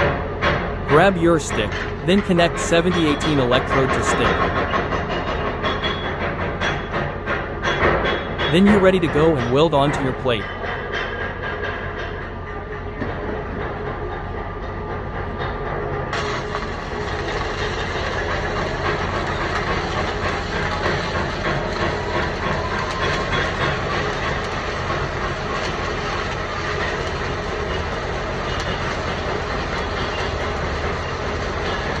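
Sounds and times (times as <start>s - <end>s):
welding arc crackling: 16.1s - 32.0s.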